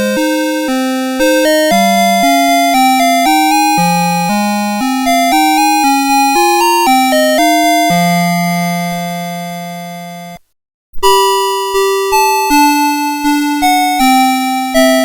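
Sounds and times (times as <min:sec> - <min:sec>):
electronic alarm clock melody: 0:00.0 - 0:10.4, 0:11.0 - 0:15.0.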